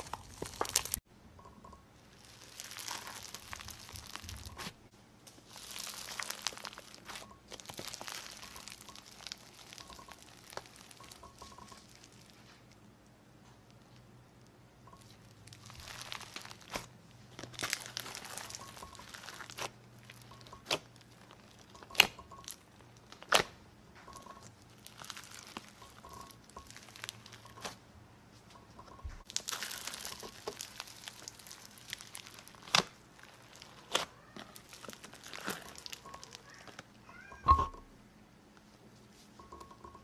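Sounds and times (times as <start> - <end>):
slime crackling: 0.0 - 1.0, 2.1 - 12.7, 14.9 - 27.8, 29.2 - 37.0
slime popping: 0.0 - 1.0, 2.2 - 4.8, 5.4 - 12.4, 15.0 - 27.8, 29.2 - 36.8.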